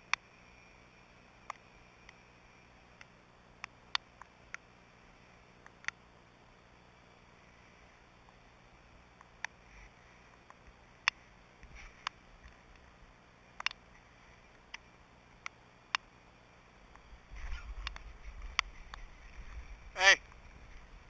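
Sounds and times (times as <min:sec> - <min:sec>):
faint hiss: 0:00.0 - 0:21.0
sharp clicks: 0:13.6 - 0:13.9, 0:17.7 - 0:19.0.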